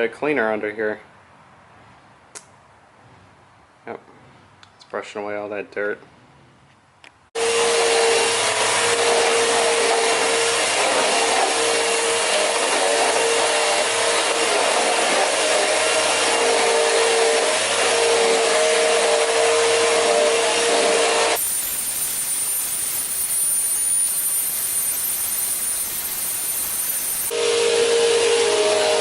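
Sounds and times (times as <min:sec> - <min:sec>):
electric power tool whining: 0:07.4 - 0:29.0
rushing noise: 0:21.4 - 0:28.5.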